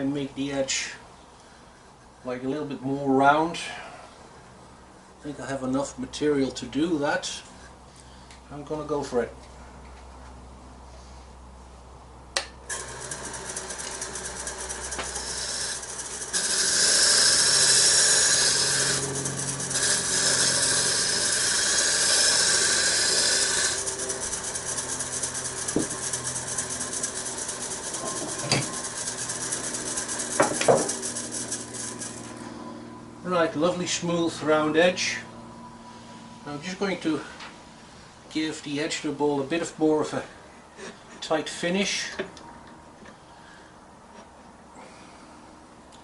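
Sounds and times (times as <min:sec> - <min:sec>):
turning tool scraping wood: 0:12.7 - 0:32.6
wood lathe spinning: 0:12.7 - 0:32.6.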